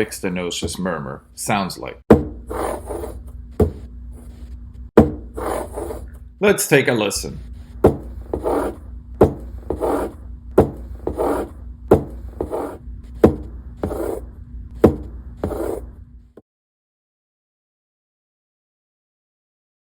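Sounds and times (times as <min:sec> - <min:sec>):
faint steady hum: 0:02.2 - 0:16.4
heartbeat with harsh murmur: 0:07.5 - 0:14.2.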